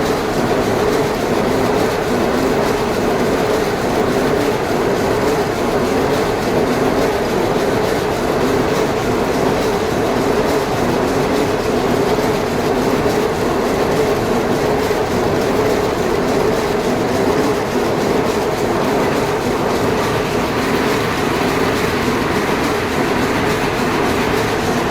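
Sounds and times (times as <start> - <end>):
machine running steadily: 0.0 - 24.9.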